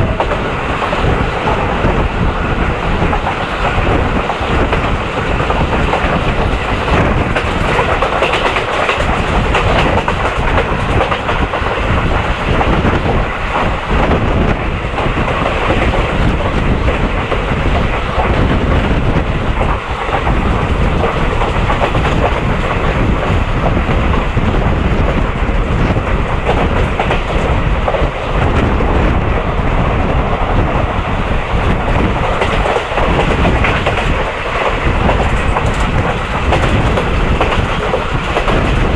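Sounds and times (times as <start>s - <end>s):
clickety-clack of rail joints: 0.0s - 38.9s
train wheels rumbling on rail: 0.0s - 38.9s.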